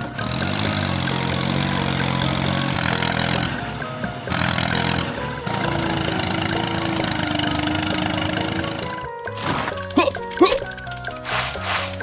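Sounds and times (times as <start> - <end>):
small engine pulsing: 0.0 - 12.0.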